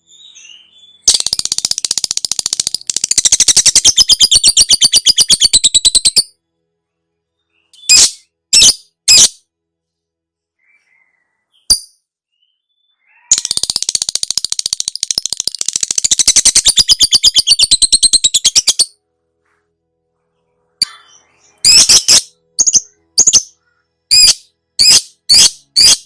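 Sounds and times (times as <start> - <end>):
lovebird chattering trill: 13.1 - 18.9, 20.8 - 26.0.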